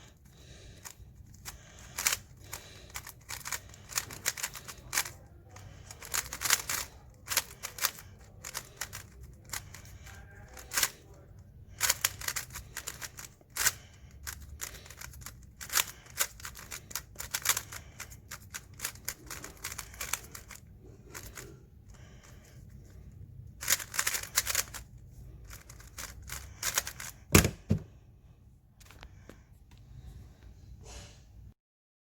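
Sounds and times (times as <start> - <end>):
speed cube clicking: 0.8 - 21.5, 23.6 - 27.3.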